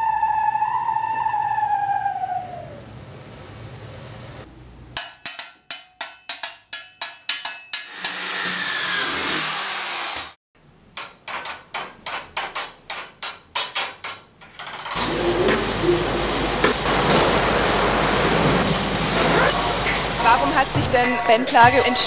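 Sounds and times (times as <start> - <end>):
steady hissing noise: 15.0 - 22.0.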